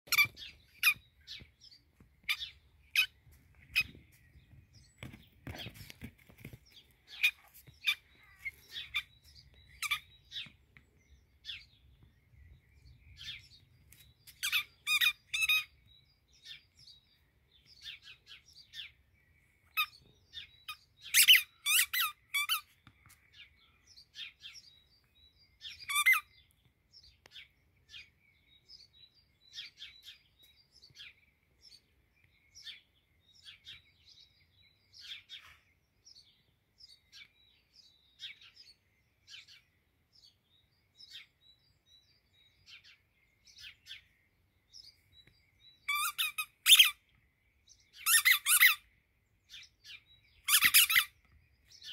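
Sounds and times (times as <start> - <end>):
squeaky toy squeaks: 0.1 - 1.0, 21.2 - 22.6, 25.9 - 26.2, 45.9 - 47.0, 48.0 - 48.8, 50.5 - 51.1.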